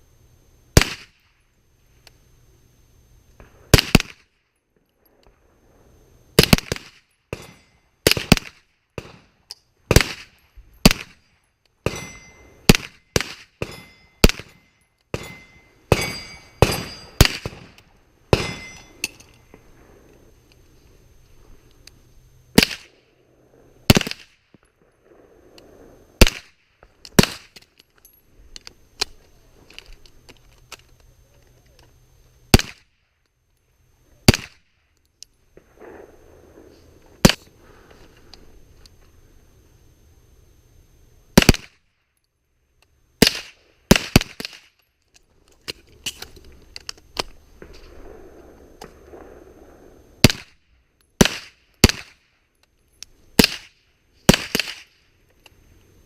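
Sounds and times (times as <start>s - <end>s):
gunshots: 0.8s - 1.2s, 3.4s - 4.3s, 6.4s - 18.8s, 22.5s - 23.0s, 23.8s - 24.4s, 26.2s - 26.6s, 27.2s - 27.6s, 32.5s - 32.9s, 34.2s - 34.6s, 41.4s - 41.8s, 43.2s - 44.7s, 47.6s - 50.6s, 51.2s - 52.3s, 53.4s - 55.0s.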